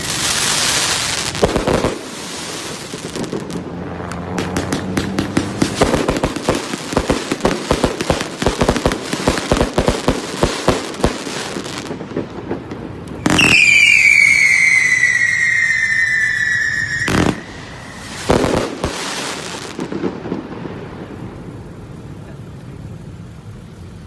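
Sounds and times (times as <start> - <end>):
fireworks bangs and pops: 0.0 - 23.0
shrill firework whistle: 13.2 - 19.4.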